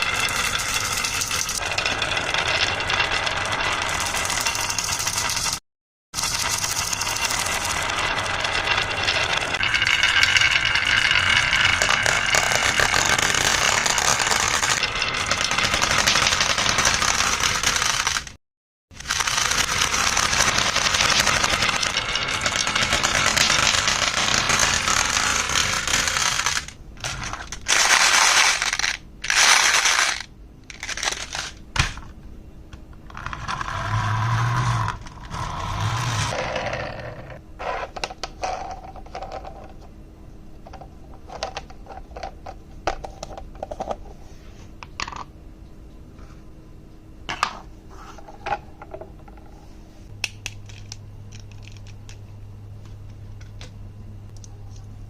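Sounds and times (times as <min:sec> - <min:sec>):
marbles rattling down wooden tracks: 0:00.0 - 0:05.6, 0:06.2 - 0:18.3, 0:19.0 - 0:31.6.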